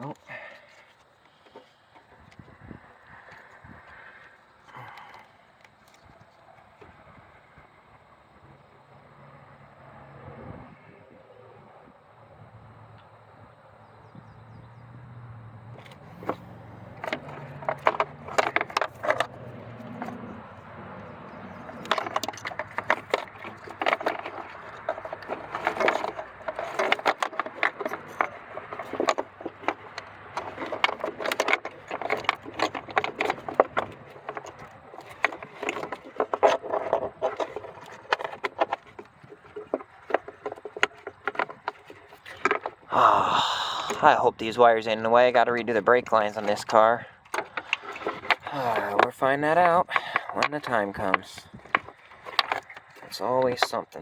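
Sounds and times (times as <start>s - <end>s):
metal parts clicking and scraping: 15.8s - 20.3s, 21.4s - 42.9s, 45.6s - 54.0s.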